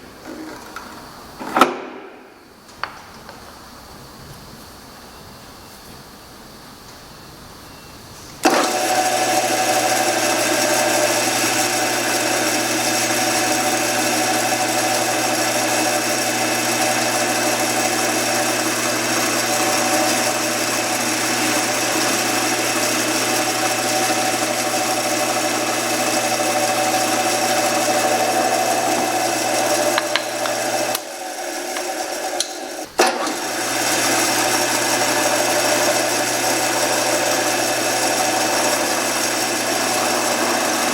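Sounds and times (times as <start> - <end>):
power tool motor humming: 8.4 - 40.9.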